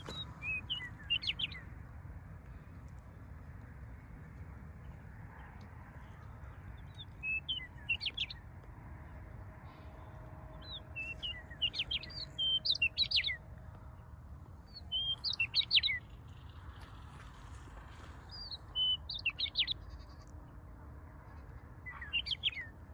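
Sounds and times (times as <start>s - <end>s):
songbird chirping: 0.0s - 1.8s, 6.1s - 8.5s, 10.5s - 13.9s, 14.6s - 17.2s.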